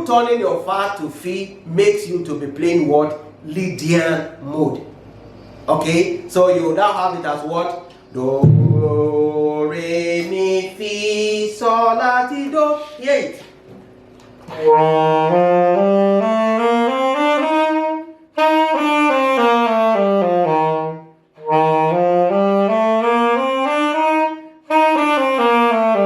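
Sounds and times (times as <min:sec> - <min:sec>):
saxophone playing a scale: 0:14.4 - 0:26.0.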